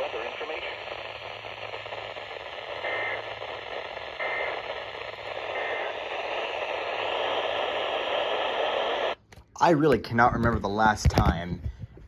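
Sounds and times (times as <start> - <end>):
radio static hiss: 0.0 - 9.2.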